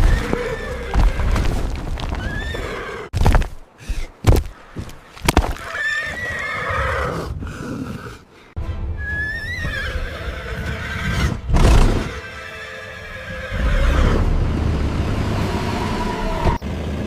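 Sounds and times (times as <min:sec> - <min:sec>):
horse whinnying: 0:05.5 - 0:07.3, 0:09.0 - 0:14.2
background music: 0:08.6 - 0:14.4.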